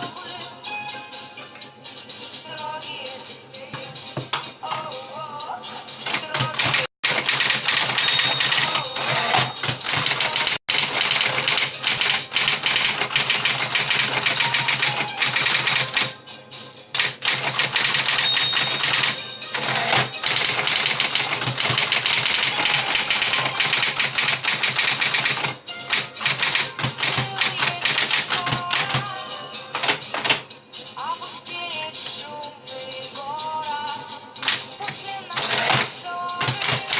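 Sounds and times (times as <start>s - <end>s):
faint background music: 0.0s - 36.9s
typewriter keys striking: 6.1s - 16.1s, 17.0s - 29.1s, 29.8s - 30.4s, 34.4s - 36.9s.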